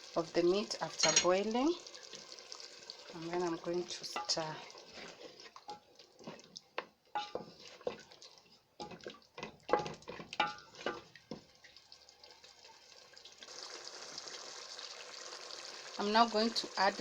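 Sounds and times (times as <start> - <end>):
spoon clinking on pot: 1.0 - 1.4, 7.2 - 7.5, 8.8 - 11.0
spoon stirring and scraping a pot: 3.3 - 11.5.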